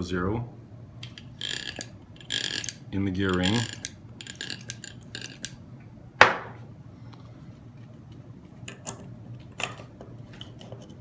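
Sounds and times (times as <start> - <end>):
small metal parts clicking: 1.0 - 5.6.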